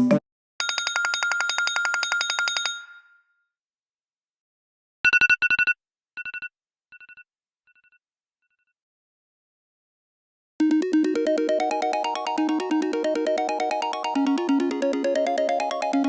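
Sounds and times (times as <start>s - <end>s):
trilling telephone bell ring: 0.6s - 3.3s
ringtone run of repeated notes: 10.6s - 16.0s.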